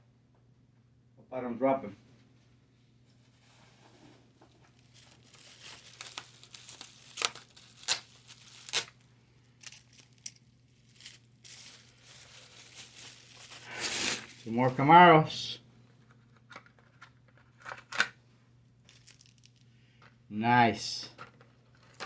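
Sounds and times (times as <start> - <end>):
packaging rustling: 4.4 - 14.5, 18.9 - 19.6
plastic packaging crinkling and tearing: 4.6 - 14.5, 18.9 - 19.6.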